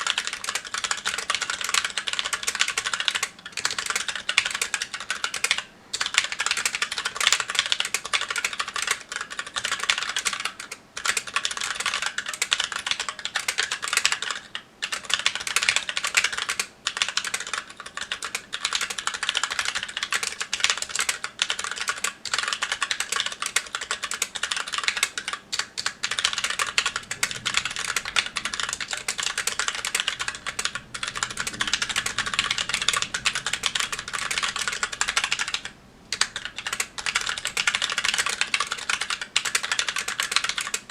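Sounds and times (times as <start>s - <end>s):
mechanical keyboard typing: 0.0s - 40.9s.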